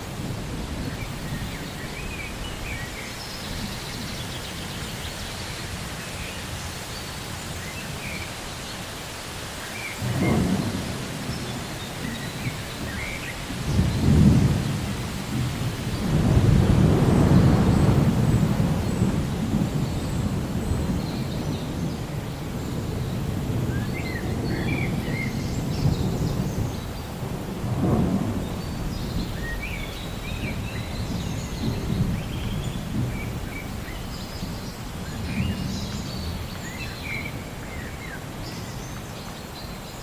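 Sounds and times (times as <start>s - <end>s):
steady rainfall: 0.0s - 40.0s
thunder rumbling: 10.0s - 38.4s.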